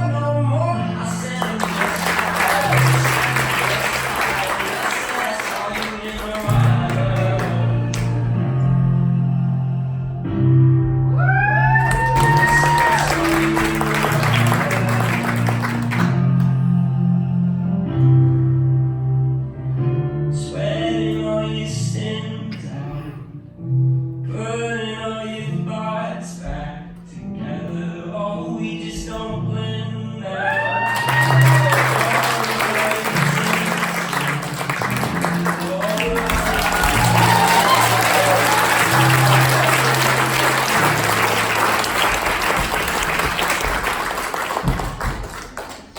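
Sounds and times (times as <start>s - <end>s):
audience applauding: 1.1s - 8.2s, 11.4s - 16.6s, 30.7s - 45.9s
song with singing and guitar: 5.1s - 10.2s.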